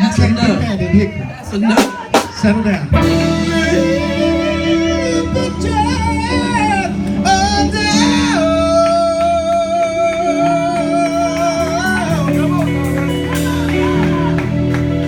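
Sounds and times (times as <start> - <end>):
band with guitar: 0.0 - 15.0
person singing gospel: 1.6 - 14.4.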